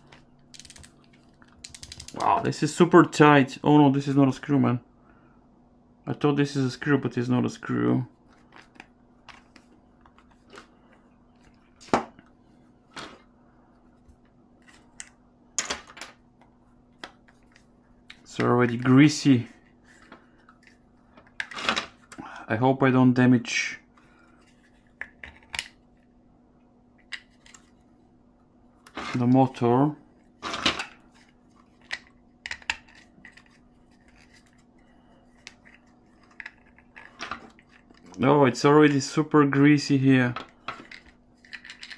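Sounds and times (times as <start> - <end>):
plastic parts clicking and tapping: 40.4 - 41.9.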